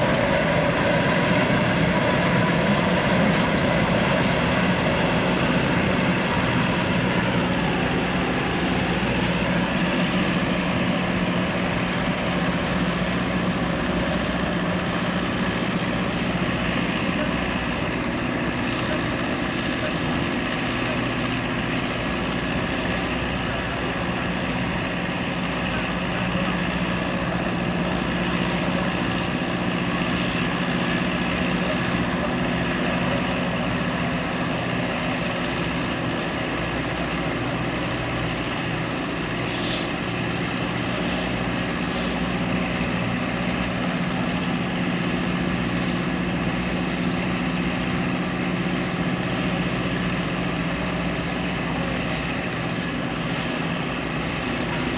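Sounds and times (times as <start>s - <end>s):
gas turbines whining: 0.0s - 54.9s.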